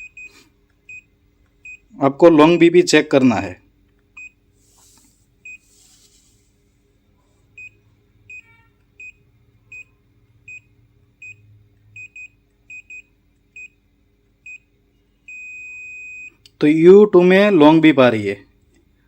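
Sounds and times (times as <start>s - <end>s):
air conditioner short high beeps: 0.0s - 2.7s, 4.2s - 4.5s, 5.4s - 6.0s, 7.5s - 13.8s, 14.4s - 16.9s.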